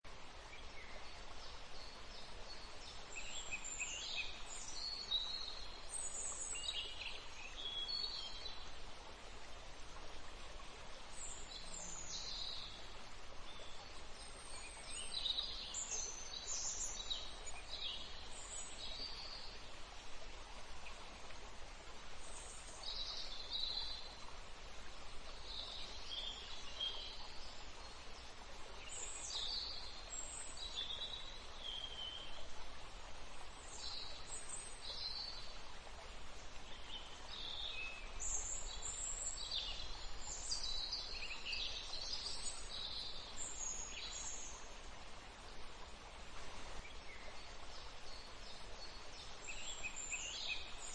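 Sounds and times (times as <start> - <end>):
background hiss: 0.0 - 50.9
songbirds chirping: 0.0 - 50.9.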